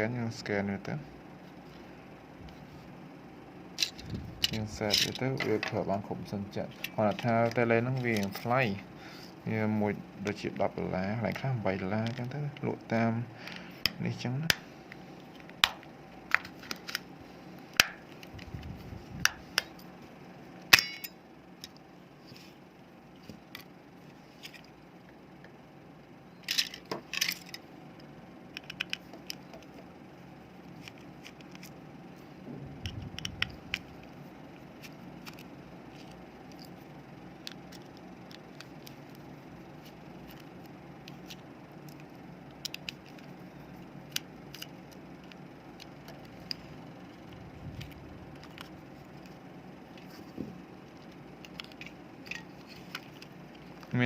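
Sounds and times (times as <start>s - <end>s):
faint steady hum: 0.0s - 54.0s
plastic parts clicking and tapping: 28.5s - 29.8s.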